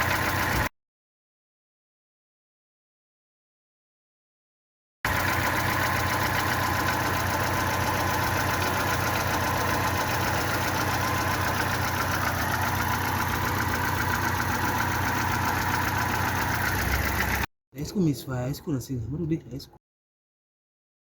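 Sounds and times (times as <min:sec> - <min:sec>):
car engine idling with misfire: 0:00.0 - 0:00.7, 0:05.1 - 0:17.5.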